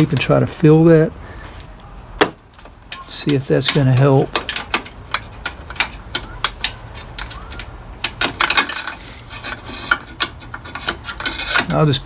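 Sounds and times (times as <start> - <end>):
tape rubbing and scraping: 4.8 - 12.0.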